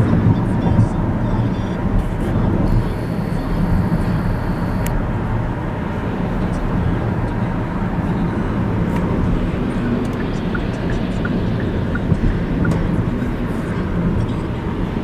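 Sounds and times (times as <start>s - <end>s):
car road and engine noise: 0.0s - 15.0s.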